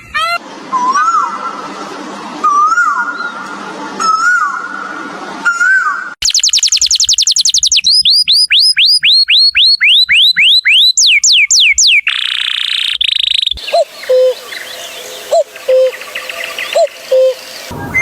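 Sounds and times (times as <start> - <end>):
low repeated bird notes: 0.6 - 18.0
high falling whistled bird calls: 5.5 - 18.0
buzzy bird trill: 6.2 - 18.0
faint chirps: 12.1 - 18.0.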